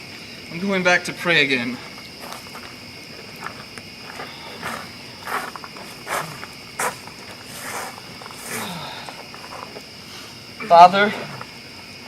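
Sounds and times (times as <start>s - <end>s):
crickets chirping: 0.0s - 12.0s
rustling scuffs: 1.8s - 10.0s.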